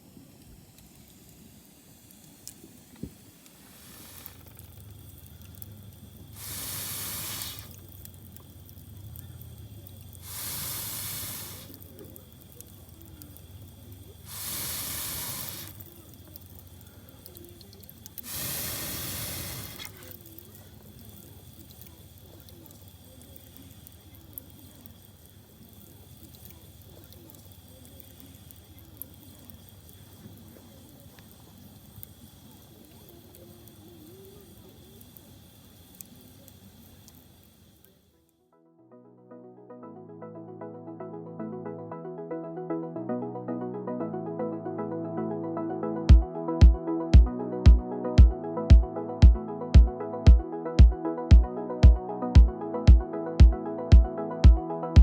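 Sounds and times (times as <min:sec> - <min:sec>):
hissing puffs of air: 0:00.0 - 0:26.4
wood fire crackling: 0:00.0 - 0:38.2, 0:46.1 - 0:55.0.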